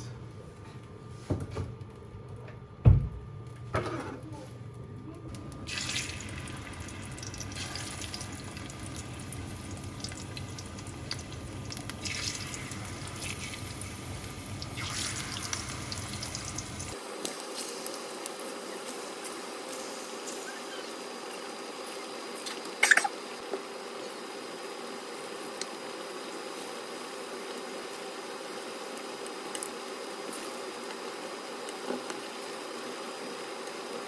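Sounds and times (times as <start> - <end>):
plantain frying in hot oil: 5.6 - 34.0.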